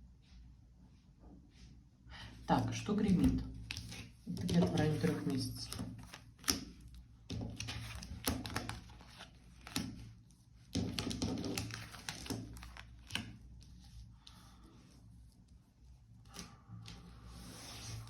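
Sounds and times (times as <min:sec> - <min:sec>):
cards rustling: 0:03.1 - 0:10.2, 0:10.8 - 0:13.8
cards tapping on a table: 0:10.7 - 0:13.3.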